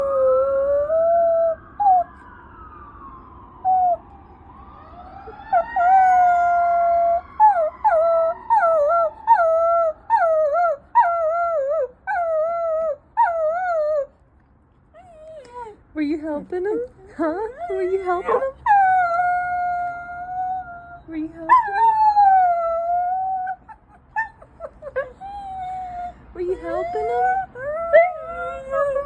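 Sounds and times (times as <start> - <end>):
faint ambulance siren wail: 0.0 - 14.2, 15.0 - 29.0
dog howling: 17.5 - 20.9, 21.5 - 29.0.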